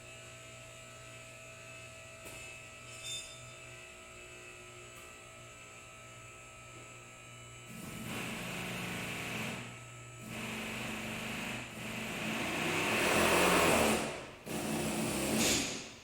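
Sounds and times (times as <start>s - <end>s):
power tool running: 7.7s - 15.9s.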